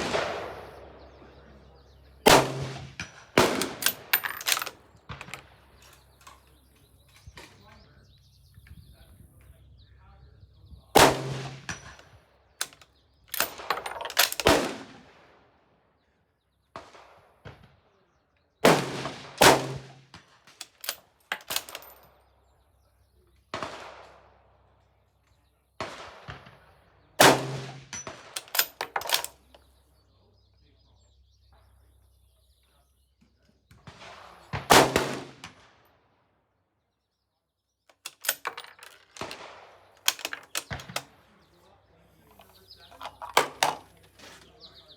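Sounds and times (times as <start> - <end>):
rifle shots cracking: 0.0 - 0.8, 2.2 - 6.4, 11.0 - 12.0, 12.6 - 15.1, 18.6 - 20.0, 27.2 - 29.4, 34.0 - 35.7, 37.9 - 41.2, 42.3 - 44.0
rifle bolt metallic clicks: 3.4 - 6.5, 12.6 - 14.6, 20.6 - 22.0, 28.0 - 29.6, 37.9 - 39.4, 40.0 - 41.1, 42.3 - 44.4.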